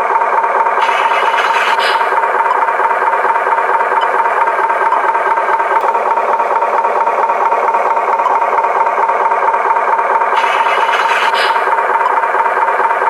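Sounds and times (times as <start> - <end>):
toy truck motor whirring: 0.4 - 13.0.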